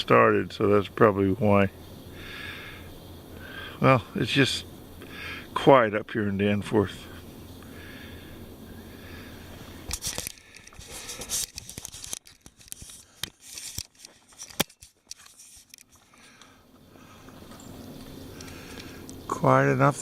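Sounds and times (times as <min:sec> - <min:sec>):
camera handling against microphone: 0:09.9 - 0:16.1.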